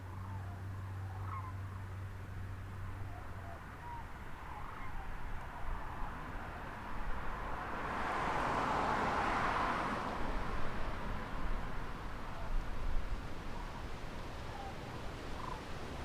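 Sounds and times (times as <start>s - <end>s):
vehicle driving past: 6.4s - 12.0s.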